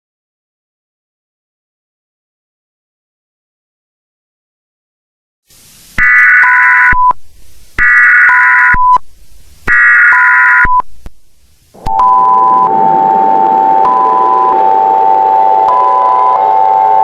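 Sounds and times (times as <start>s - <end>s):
short steady beep: 6.0s - 7.2s, 7.8s - 9.0s, 9.7s - 10.9s, 11.8s - 16.4s
two-tone attention signal: 6.0s - 7.2s, 7.8s - 9.0s, 9.7s - 10.8s, 11.8s - 17.0s
warbling digital data tones: 9.7s - 10.9s, 11.8s - 17.0s.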